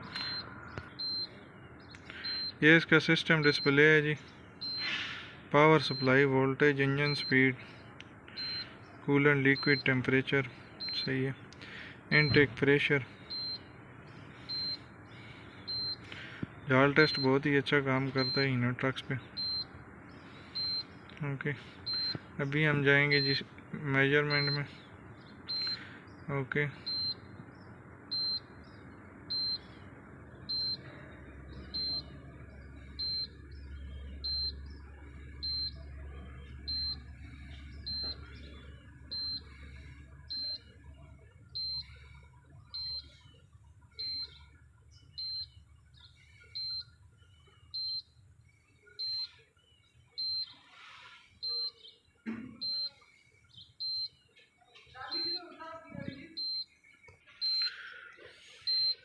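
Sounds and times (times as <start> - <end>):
high electronic beep: 0.2 - 1.4, 2.2 - 3.9, 4.6 - 4.9, 5.8 - 6.3, 6.9 - 7.5, 8.4 - 8.7, 9.5 - 10.0, 10.8 - 11.2, 13.3 - 13.7, 14.5 - 14.8, 15.7 - 16.0, 16.9 - 17.4, 18.1 - 18.6, 19.3 - 19.7, 20.6 - 20.9, 21.9 - 22.2, 23.0 - 23.4, 24.3 - 24.7, 25.5 - 25.8, 26.8 - 27.2, 28.1 - 28.5, 29.3 - 29.7, 30.5 - 30.9, 31.6 - 32.2, 32.9 - 33.4, 34.1 - 34.6, 35.4 - 38.5, 39.1 - 40.7, 41.5 - 43.2, 44.0 - 44.5, 45.2 - 45.6, 46.5 - 46.9, 47.7 - 48.1, 49.0 - 49.4, 50.2 - 50.6, 51.4 - 51.8, 52.4 - 53.0, 53.8 - 54.2, 55.1 - 55.4, 56.0 - 56.7, 57.4 - 57.8, 58.6 - 59.0.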